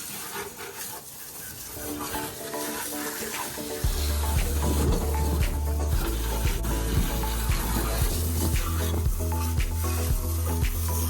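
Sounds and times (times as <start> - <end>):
water running and splashing: 0.0 - 11.0
background music: 1.7 - 11.0
heavy bass beat: 3.8 - 11.0.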